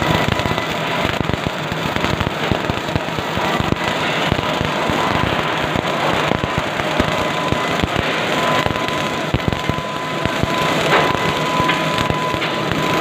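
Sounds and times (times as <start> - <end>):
thin steady whine: 0.0 - 13.0
welding arc crackling: 0.0 - 13.0.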